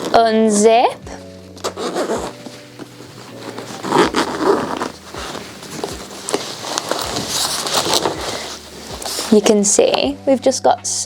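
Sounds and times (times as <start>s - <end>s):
zipper rasping open: 0.0s - 0.3s, 1.6s - 9.6s.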